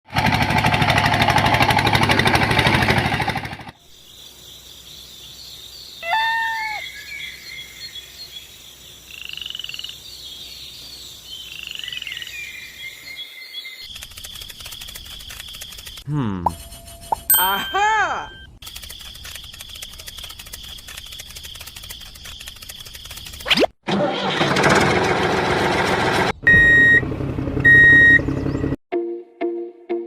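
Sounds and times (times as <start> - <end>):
chirping calls: 3.9 - 23.4
fast machine-like rattle: 13.8 - 17.1, 18.6 - 23.5.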